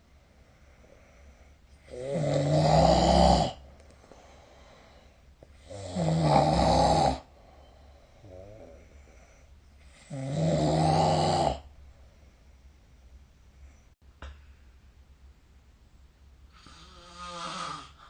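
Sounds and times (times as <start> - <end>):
quiet breathing: 0.0 - 2.1, 3.4 - 5.8, 7.2 - 10.3, 11.6 - 14.8, 16.4 - 18.0
person snoring: 1.9 - 3.6, 5.6 - 7.3, 8.2 - 9.3, 9.9 - 11.7, 16.5 - 18.0.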